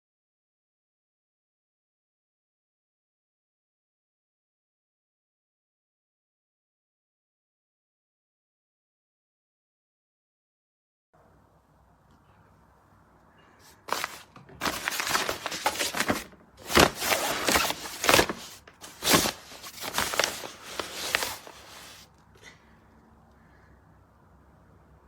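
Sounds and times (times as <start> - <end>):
rustling and scraping handling noise: 13.5 - 22.6.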